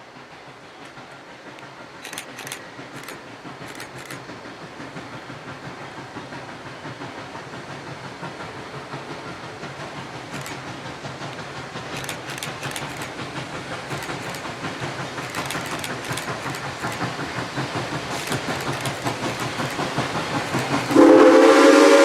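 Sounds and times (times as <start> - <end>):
steam train rumble and hiss: 0.0 - 22.0
sharp clicks: 1.6 - 4.3, 10.3 - 21.0.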